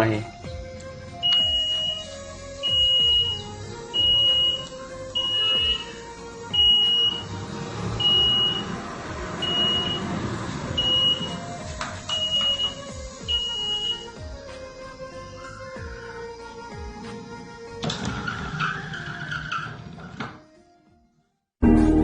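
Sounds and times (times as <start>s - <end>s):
high steady electronic beep: 1.2s - 7.3s, 8.0s - 8.8s, 9.4s - 10.0s, 10.8s - 11.4s, 12.1s - 14.2s.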